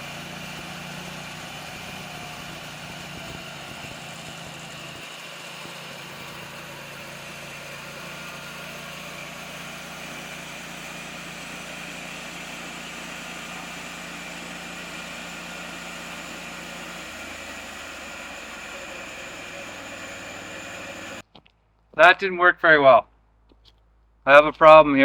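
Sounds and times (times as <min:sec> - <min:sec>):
sawmill engine humming: 0:00.0 - 0:21.2.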